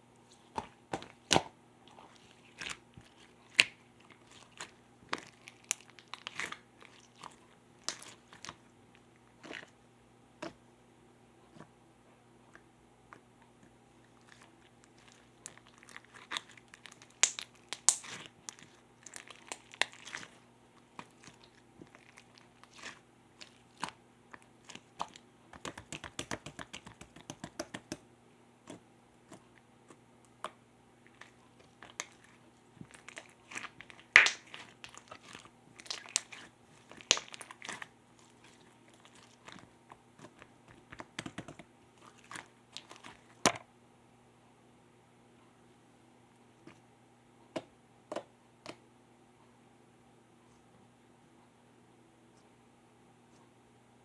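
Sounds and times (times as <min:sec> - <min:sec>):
faint low hum: 0:00.0 - 0:54.0
slime sticky clicks and pops: 0:34.1 - 0:34.5.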